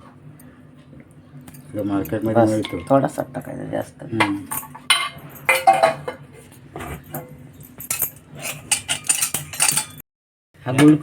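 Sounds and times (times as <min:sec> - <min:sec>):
spoon clinking in metal pot: 0:04.2 - 0:06.2, 0:07.9 - 0:10.0.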